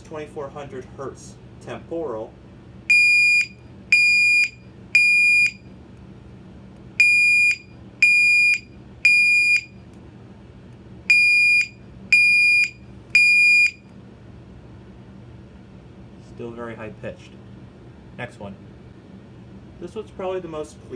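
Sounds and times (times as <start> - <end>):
high-pitched alarm beeps: 2.9 - 5.6, 7.0 - 9.8, 11.1 - 13.8.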